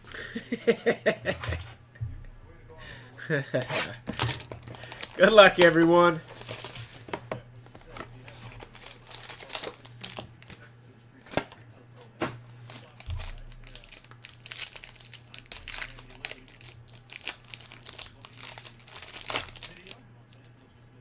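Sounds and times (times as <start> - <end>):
steady low hum: 0.0 - 21.0
wrapper crinkling and tearing: 3.7 - 10.6, 12.6 - 20.5.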